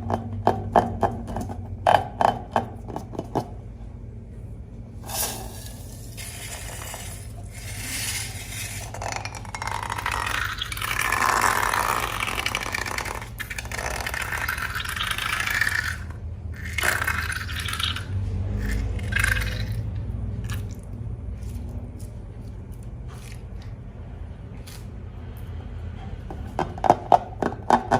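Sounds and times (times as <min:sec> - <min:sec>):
slime stirred and scraped in bowl: 0:05.0 - 0:23.9.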